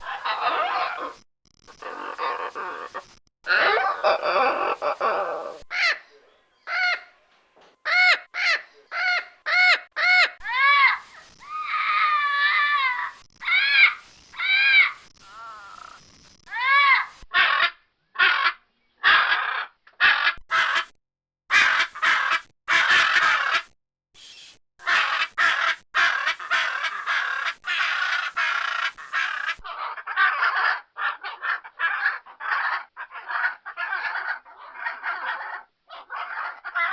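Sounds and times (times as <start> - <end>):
parrot screeching squawks: 0.0 - 1.2, 1.8 - 6.0, 6.7 - 7.1, 7.9 - 20.9, 21.5 - 23.7, 24.8 - 36.9
parrot chattering squawks: 0.0 - 6.0, 7.9 - 20.9, 21.5 - 23.7, 24.8 - 36.9
parrot whistled calls: 10.4 - 15.0.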